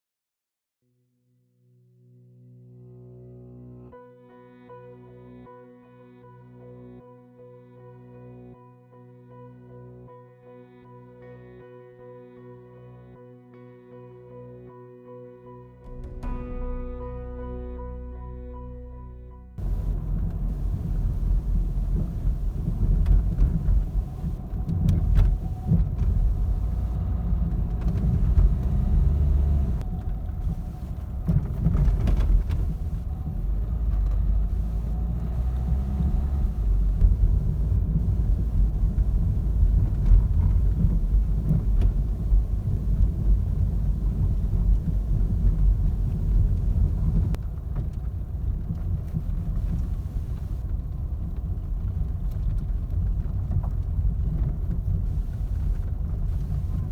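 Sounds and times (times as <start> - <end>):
suspension knocks: 19.6 - 50.6
car rumbling over road: 19.6 - 56.9.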